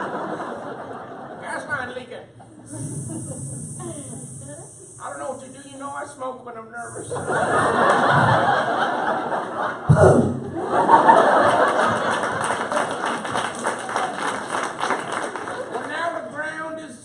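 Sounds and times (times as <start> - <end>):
audience laughing: 0.0 - 1.4, 6.9 - 16.1.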